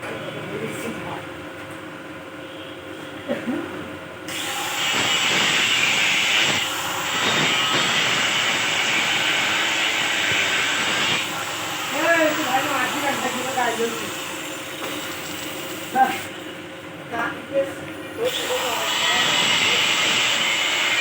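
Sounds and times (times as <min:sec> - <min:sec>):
welding arc crackling and hissing: 0:04.3 - 0:14.2, 0:18.4 - 0:21.0.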